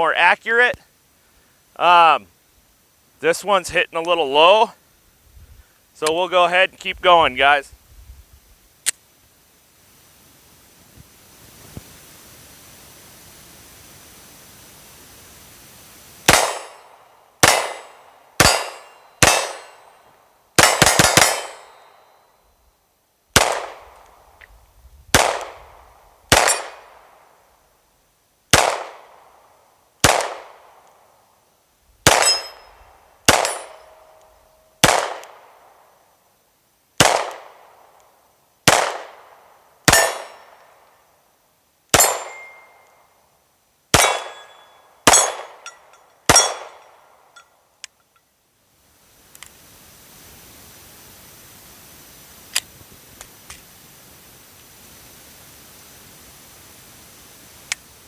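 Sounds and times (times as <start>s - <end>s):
pistol shots with ringing echo: 16.3s - 19.9s, 20.6s - 22.0s, 23.4s - 23.9s, 25.2s - 25.6s, 26.3s - 27.0s, 28.6s - 29.1s, 30.0s - 30.6s, 32.0s - 32.7s, 33.3s - 34.2s, 34.8s - 35.4s, 37.0s - 37.6s, 38.7s - 39.2s, 39.9s - 40.6s, 41.9s - 42.8s, 43.9s - 47.1s.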